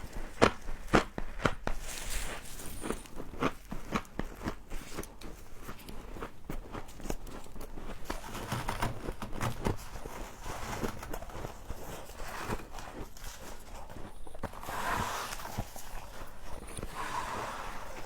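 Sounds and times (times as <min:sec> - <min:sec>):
frost being chewed crunching: 0:00.2 - 0:08.2.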